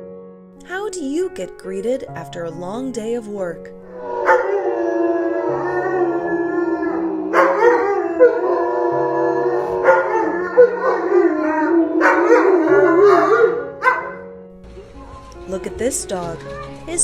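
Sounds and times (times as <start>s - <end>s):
background music: 0.0s - 17.0s
dog howling: 3.8s - 14.3s.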